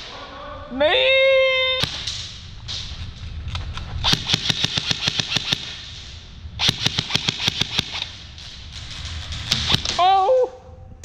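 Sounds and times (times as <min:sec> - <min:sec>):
airsoft guns firing: 0:01.8 - 0:03.0, 0:04.0 - 0:10.2.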